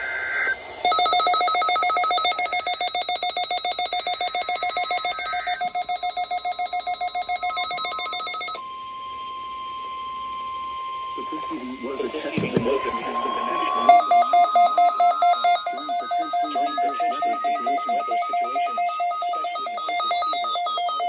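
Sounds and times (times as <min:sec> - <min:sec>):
steady alarm tone: 0:00.8 - 0:11.6, 0:12.2 - 0:21.0
pulsing shrill electronic alert tone: 0:12.7 - 0:21.0.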